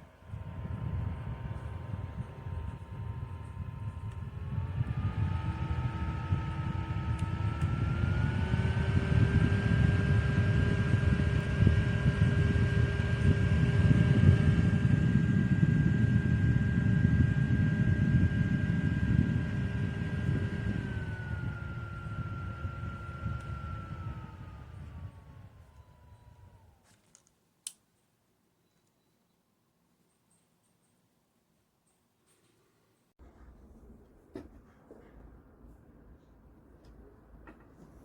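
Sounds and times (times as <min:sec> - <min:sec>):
desk fan air rush: 0:00.0 - 0:26.8
fan motor whine: 0:00.0 - 0:27.2.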